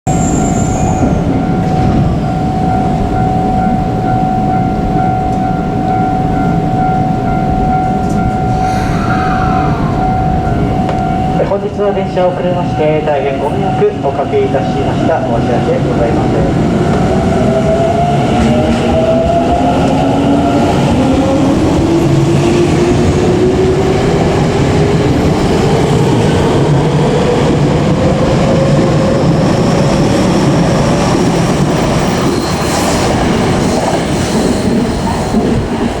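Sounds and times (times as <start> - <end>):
wheels rumbling on rail: 0.1 - 36.0.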